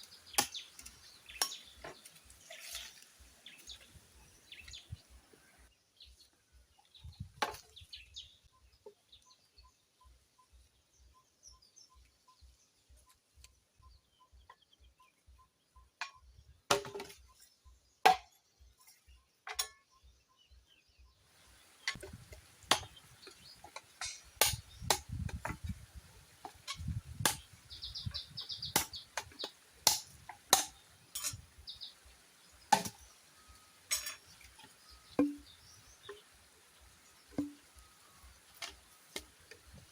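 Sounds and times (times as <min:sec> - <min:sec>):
blade chopping wood: 0:21.9 - 0:23.0, 0:24.0 - 0:25.7, 0:26.4 - 0:27.5, 0:28.7 - 0:31.4, 0:32.7 - 0:33.0.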